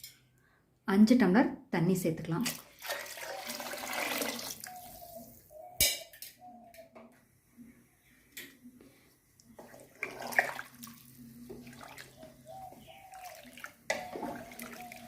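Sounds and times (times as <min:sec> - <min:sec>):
water pouring into liquid: 0:02.6 - 0:04.8.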